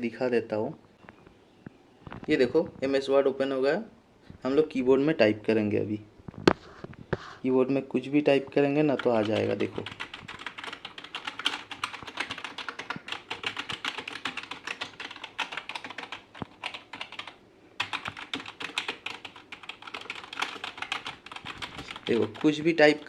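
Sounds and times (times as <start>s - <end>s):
keyboard typing clicks: 9.0s - 22.6s.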